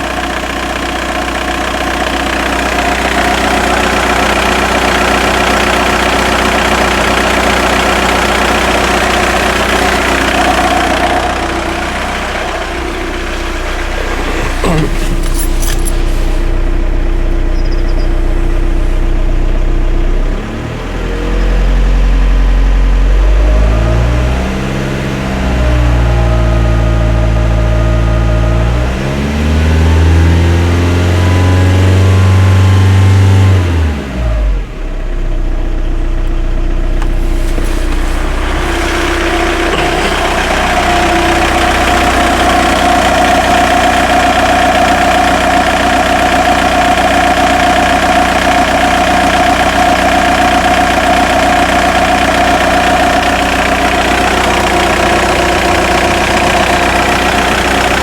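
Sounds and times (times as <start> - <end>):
diesel engine revving and idling: 0.0 - 58.0
steady whine: 9.1 - 19.6.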